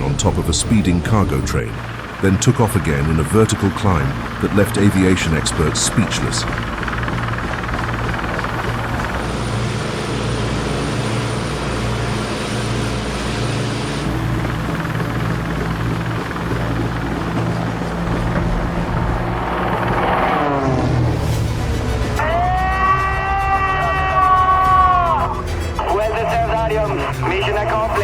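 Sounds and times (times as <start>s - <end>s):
propeller aircraft engine: 0.0s - 28.0s.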